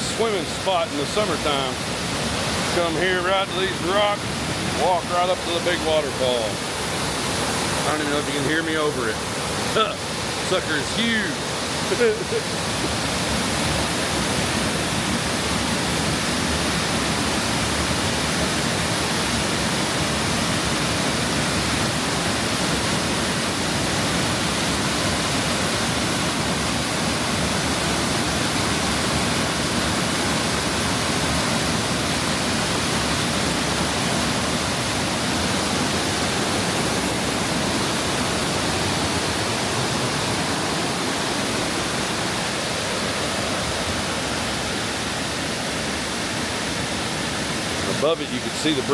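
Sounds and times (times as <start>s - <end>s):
waterfall roaring: 0.0s - 48.9s.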